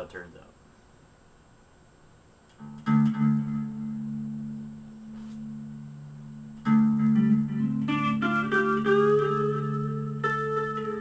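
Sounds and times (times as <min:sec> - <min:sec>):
electric guitar chord strummed: 0:02.6 - 0:04.8, 0:05.4 - 0:11.0.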